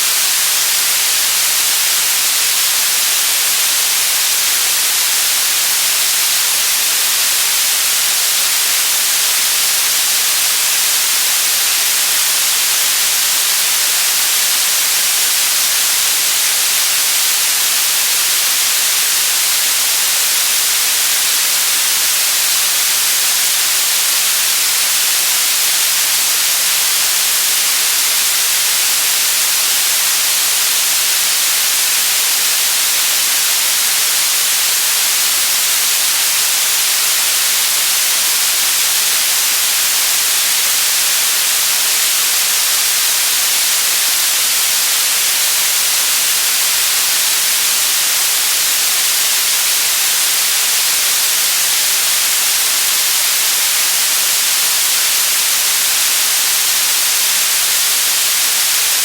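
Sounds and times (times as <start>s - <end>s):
white noise hiss: 0.0s - 59.0s.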